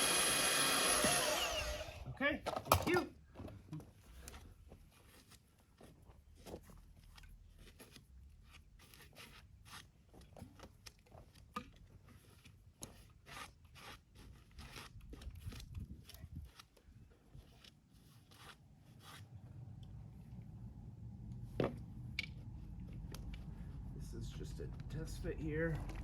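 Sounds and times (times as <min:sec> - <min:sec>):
faint crunches and scrapes: 0:03.8 - 0:19.7.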